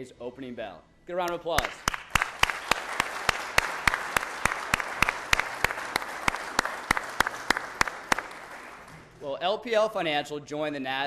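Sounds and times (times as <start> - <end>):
person clapping close: 1.2 - 9.2
audience applauding: 1.6 - 9.2.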